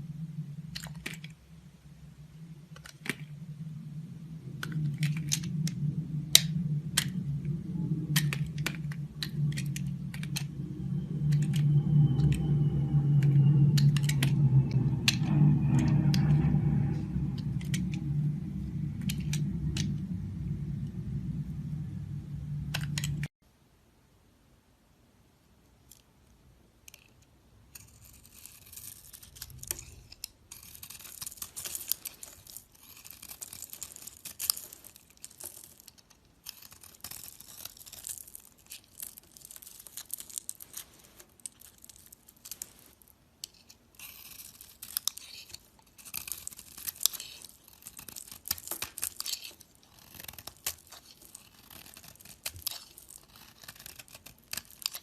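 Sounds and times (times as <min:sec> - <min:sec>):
blade scraping soap: 0:43.4 - 0:55.0.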